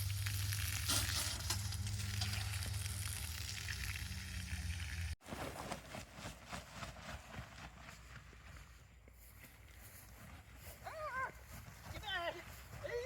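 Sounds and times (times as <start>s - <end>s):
water running from hose: 0.0s - 5.2s.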